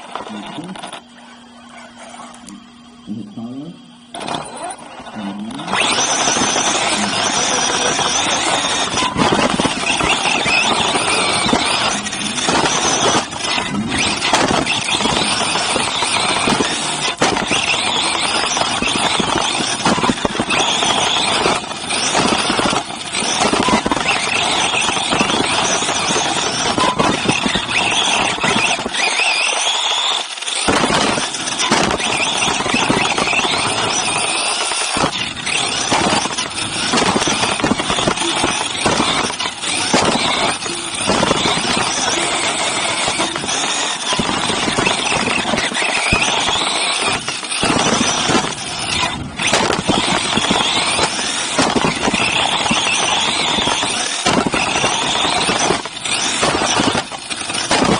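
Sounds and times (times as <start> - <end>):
rc buggy drivetrain squeal: 0.0 - 57.9.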